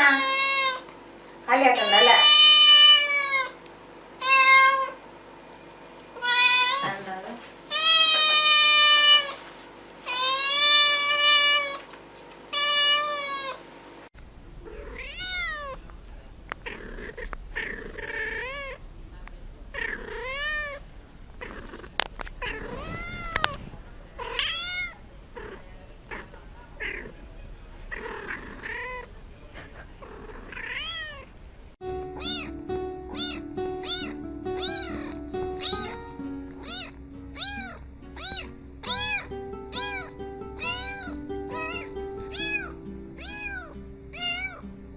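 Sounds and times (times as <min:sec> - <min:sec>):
cats meowing: 0:00.0 - 0:00.8, 0:01.7 - 0:03.6, 0:04.2 - 0:05.0, 0:06.2 - 0:07.0, 0:07.7 - 0:09.4, 0:10.1 - 0:11.8, 0:12.5 - 0:13.6, 0:14.6 - 0:18.8, 0:19.7 - 0:31.3, 0:32.0 - 0:44.6.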